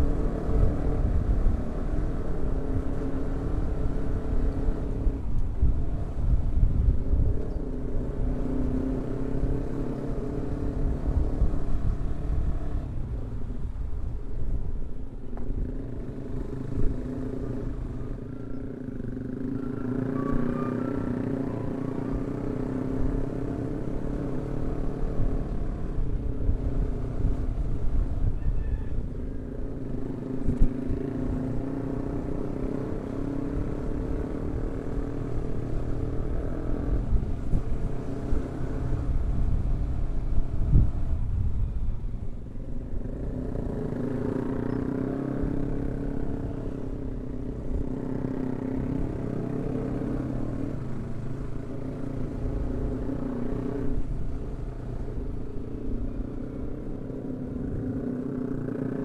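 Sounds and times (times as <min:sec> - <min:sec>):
wind and road rumble: 0:00.0 - 0:59.0.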